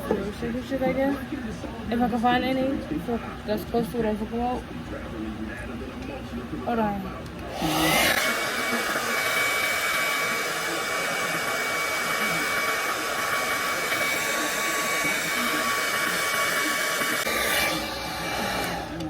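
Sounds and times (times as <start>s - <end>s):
hair dryer whining: 7.4s - 19.0s.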